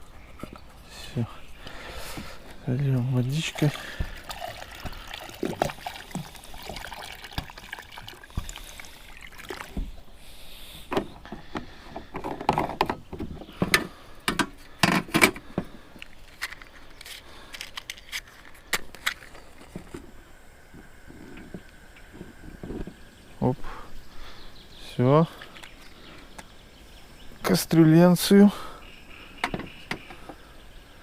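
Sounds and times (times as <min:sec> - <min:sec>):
water pouring into a pot: 0:03.2 - 0:09.8.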